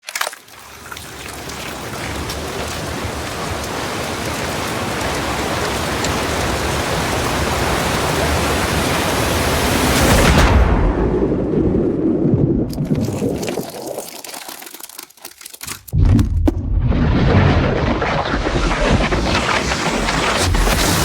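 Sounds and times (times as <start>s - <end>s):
rushing splashing water: 0.2s - 11.1s, 12.6s - 15.4s, 17.2s - 21.0s
water drips: 0.4s - 9.0s, 12.7s - 15.6s.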